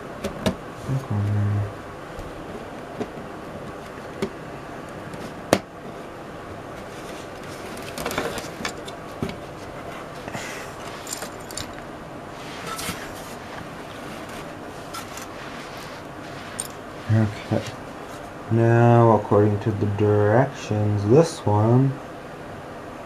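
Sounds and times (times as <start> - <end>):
steady low hiss: 0.0 - 23.0
plastic parts clicking and rattling: 7.7 - 9.0.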